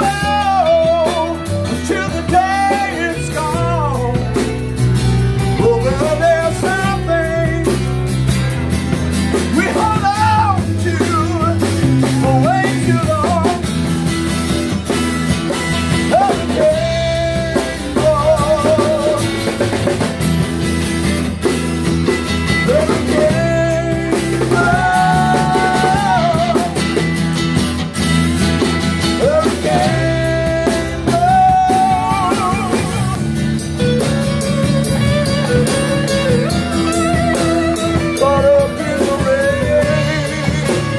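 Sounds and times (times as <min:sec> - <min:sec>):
person singing: 0:00.0 - 0:04.6, 0:05.4 - 0:08.1, 0:09.3 - 0:13.9, 0:15.9 - 0:20.0, 0:22.4 - 0:27.0, 0:29.1 - 0:33.4, 0:34.0 - 0:40.9
bass guitar: 0:00.0 - 0:40.9
drum kit: 0:00.0 - 0:40.9
electric guitar: 0:00.0 - 0:40.9.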